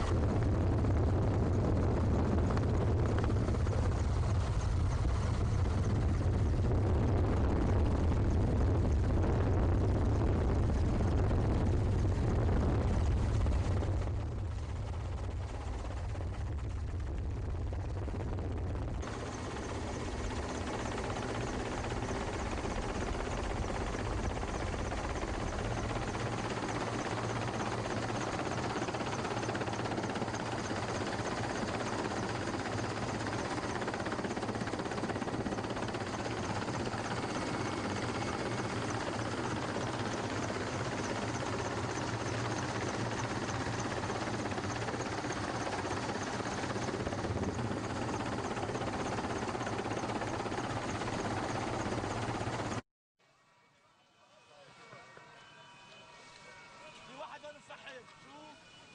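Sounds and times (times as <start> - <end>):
helicopter engine and rotor: 0.0 - 52.8
faint high whine: 51.5 - 58.9.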